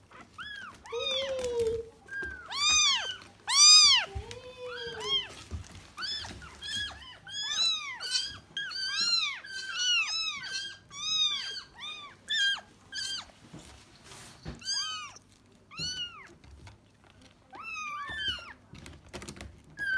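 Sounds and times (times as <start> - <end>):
cat meowing: 0.1 - 13.3, 14.6 - 16.4.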